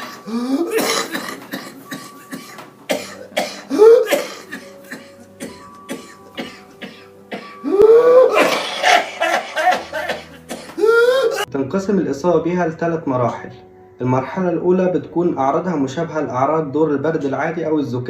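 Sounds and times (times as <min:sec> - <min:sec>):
violent coughing: 0:00.0 - 0:11.5.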